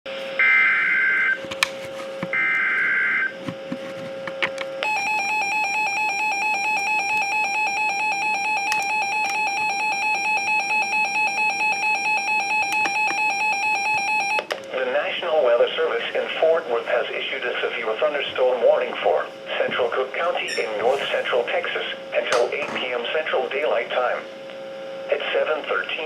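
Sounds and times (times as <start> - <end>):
high-pitched alarm tone: 0.4 - 1.4, 2.3 - 3.3, 4.8 - 14.5
radio static clicks: 14.4 - 26.0.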